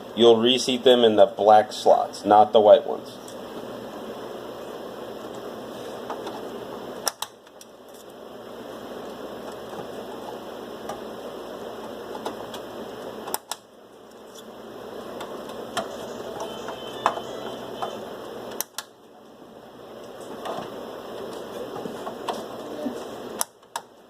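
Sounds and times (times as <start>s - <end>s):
steady low hiss: 0.0s - 24.0s
memory clips snapping shut: 7.0s - 7.6s, 13.2s - 13.7s, 18.5s - 19.0s.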